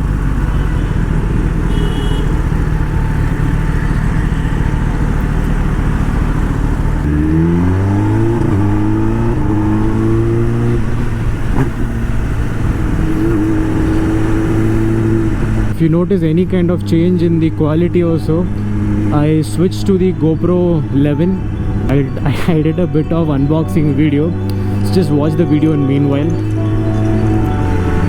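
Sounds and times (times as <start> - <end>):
motorcycle engine revving: 0.0 - 28.0.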